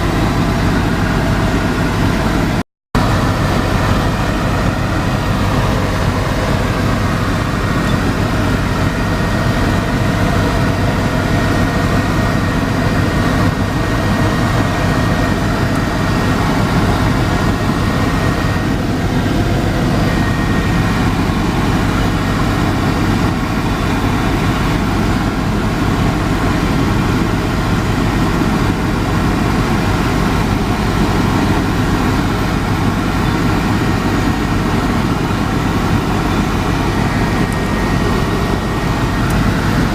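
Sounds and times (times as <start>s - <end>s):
constant low hum: 0.0s - 39.9s
helicopter engine and rotor drone: 0.0s - 39.9s.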